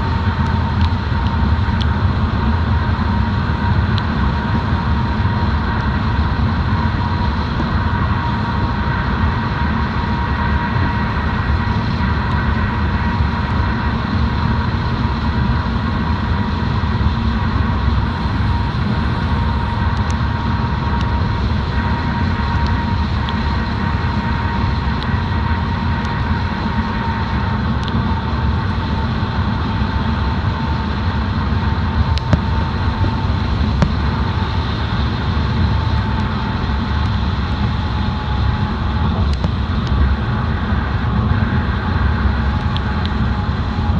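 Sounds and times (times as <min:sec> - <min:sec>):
faint steady whine: 0:00.0 - 0:43.9
moving car rumble: 0:00.0 - 0:43.9.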